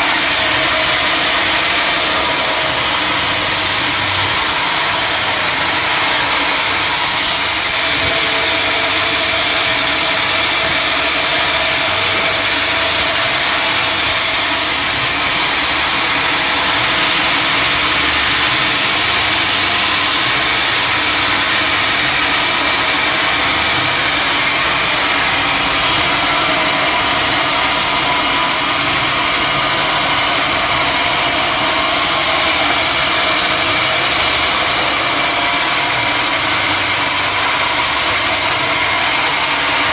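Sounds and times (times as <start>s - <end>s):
sawmill saw running: 0.0s - 39.9s.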